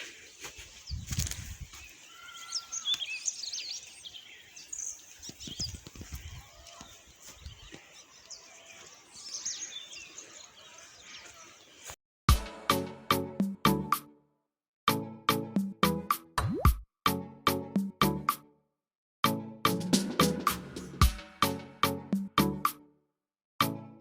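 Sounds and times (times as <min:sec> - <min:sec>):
small birds chirping: 0:00.0 - 0:12.0.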